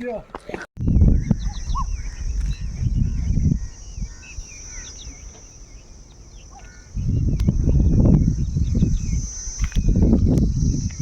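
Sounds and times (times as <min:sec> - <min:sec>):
small birds chirping: 0:00.0 - 0:11.0
high-pitched insect drone: 0:00.8 - 0:11.0
low rumble on microphone: 0:00.8 - 0:11.0.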